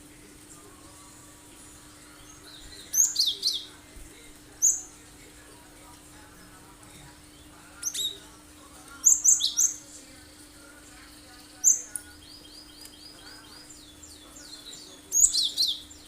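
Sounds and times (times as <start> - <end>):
bird singing high sweeping notes: 1.7 - 3.7.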